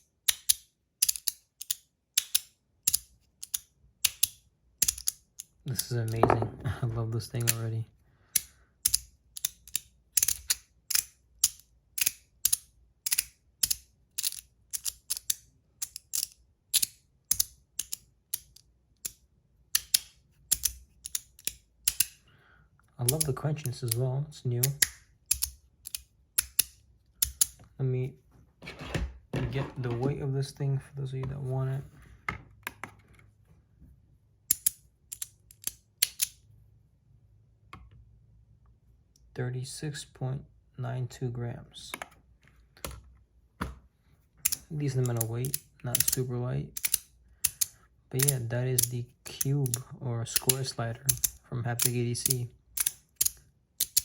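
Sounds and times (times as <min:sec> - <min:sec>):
sharp plastic clicks: 0:00.2 - 0:06.2, 0:08.4 - 0:22.2, 0:24.6 - 0:27.7, 0:34.5 - 0:36.4, 0:44.4 - 0:46.2, 0:46.8 - 0:49.8, 0:50.4 - 0:54.0.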